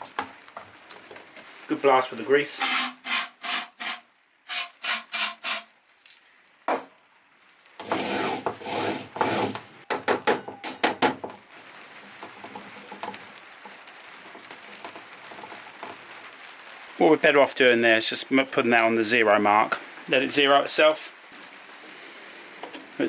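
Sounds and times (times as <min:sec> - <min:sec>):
faint steady background noise: 0:00.0 - 0:23.0
hand scraping saw mechanism: 0:02.6 - 0:05.7, 0:07.8 - 0:09.7.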